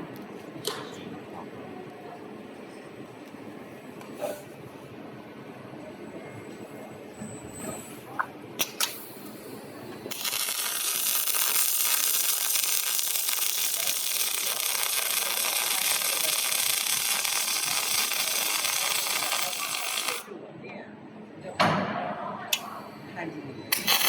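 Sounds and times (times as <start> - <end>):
welding arc hissing: 8.6 - 20.3, 23.7 - 24.0.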